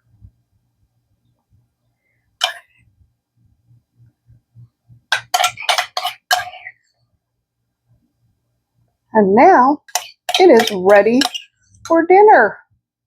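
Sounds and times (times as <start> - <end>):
spoon clinking against dishes: 2.4 - 2.7, 5.1 - 6.7, 9.9 - 11.6.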